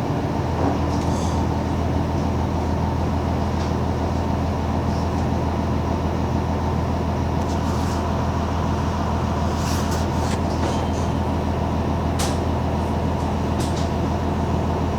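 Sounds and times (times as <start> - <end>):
bus diesel engine droning: 0.0 - 14.9.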